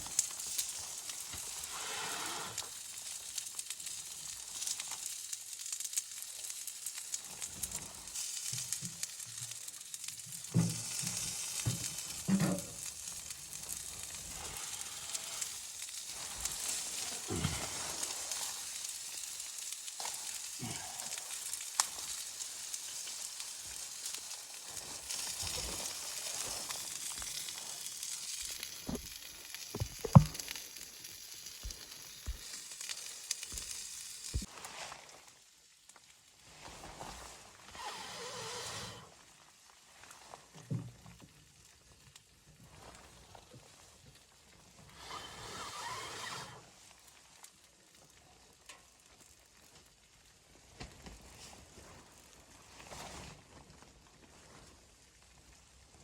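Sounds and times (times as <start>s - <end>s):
food sizzling in a pan: 0.0s - 38.6s.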